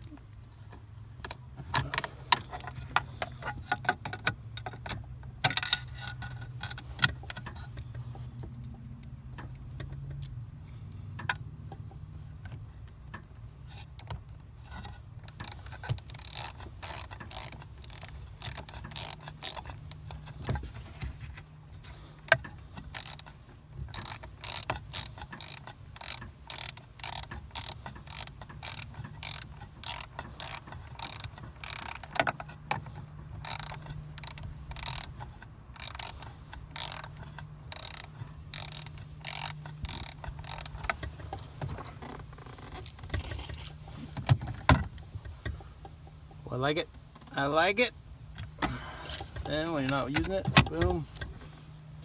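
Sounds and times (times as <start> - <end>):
ratcheting hand tool clicking: 1.2 - 7.8, 13.7 - 20.8, 21.8 - 43.7.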